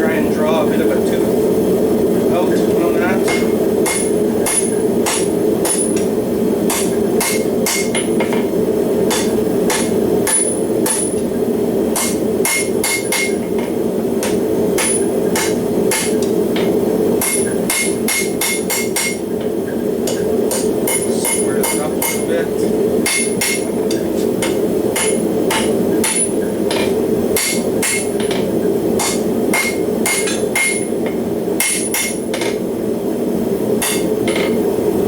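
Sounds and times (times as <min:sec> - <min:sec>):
forge running steadily: 0:00.0 - 0:35.0
hammer striking steel on anvil: 0:03.3 - 0:08.5, 0:09.1 - 0:11.2, 0:12.0 - 0:19.3, 0:20.0 - 0:22.4, 0:23.0 - 0:32.6, 0:33.8 - 0:34.6.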